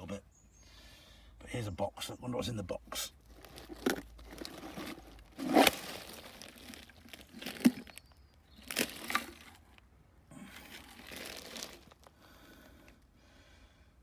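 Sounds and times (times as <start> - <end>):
dirt crunching and crackling: 3.2 - 12.9.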